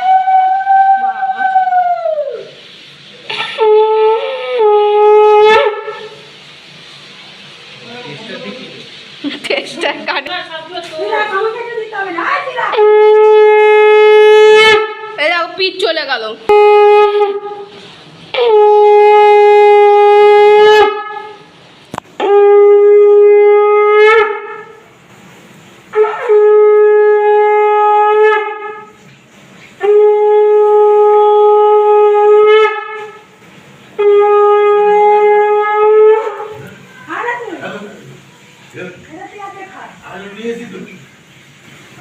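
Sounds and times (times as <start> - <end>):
conch shell blasts: 3.3 - 6.4, 12.7 - 15.2, 16.5 - 21.5, 22.2 - 24.9, 25.9 - 29.0, 29.8 - 37.3.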